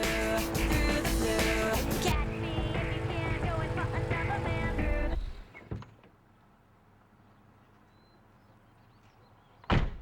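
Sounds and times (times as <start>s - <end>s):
faint bird chirps: 7.3s - 9.7s.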